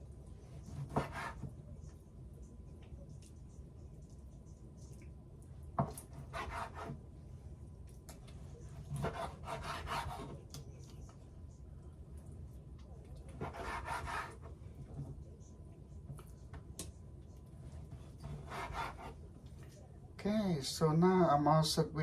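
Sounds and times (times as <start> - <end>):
knife cutting on wooden board: 0.6 - 1.5, 5.8 - 7.0, 8.8 - 10.4, 13.3 - 14.5, 17.9 - 19.2.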